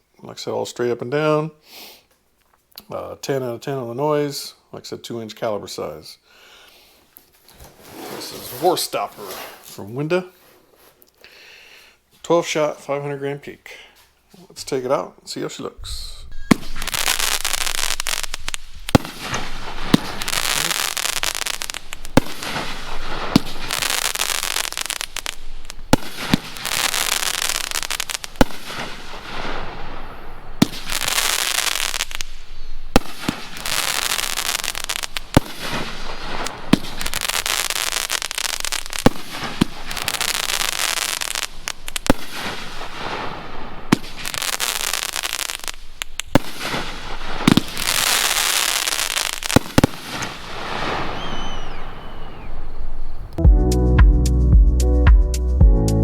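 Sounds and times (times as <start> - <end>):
firework reports: 7.8 - 10.3, 14.7 - 53.4
dense firework crackling: 15.8 - 53.4.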